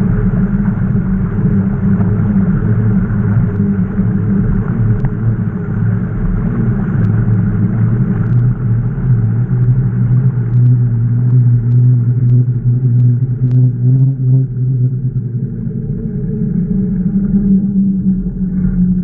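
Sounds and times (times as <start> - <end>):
bicycle riding rumble: 0.0 - 19.0
faint clicks: 8.2 - 8.5, 10.5 - 13.6.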